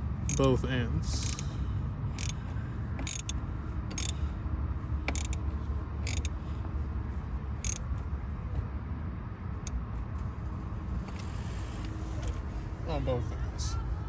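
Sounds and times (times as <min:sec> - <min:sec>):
sharp handling clicks: 0:00.3 - 0:00.6, 0:01.2 - 0:01.5, 0:03.1 - 0:04.2, 0:05.1 - 0:05.4, 0:06.1 - 0:06.3.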